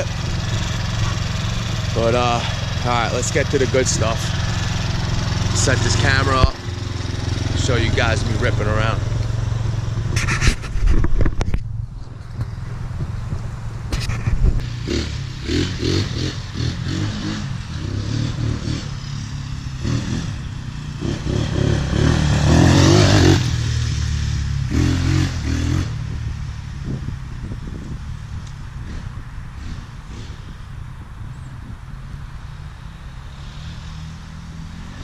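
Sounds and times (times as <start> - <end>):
quad engine revving: 0.0 - 11.0, 13.9 - 26.2.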